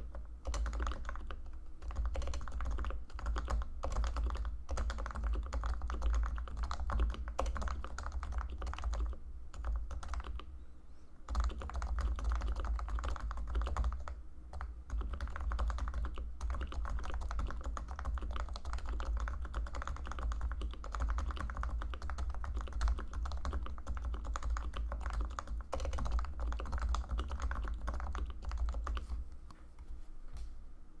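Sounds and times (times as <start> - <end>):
fast soft keyboard typing: 0.0 - 10.5, 11.3 - 29.3.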